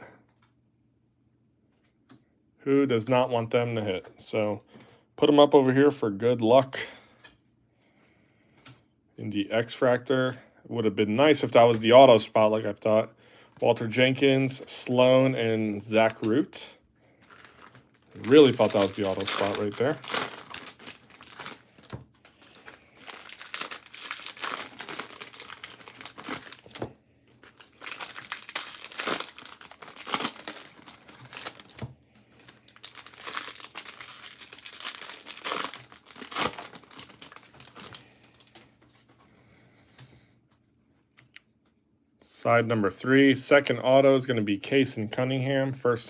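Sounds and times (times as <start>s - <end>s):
foil wrappers crinkling and tearing: 17.1s - 39.1s.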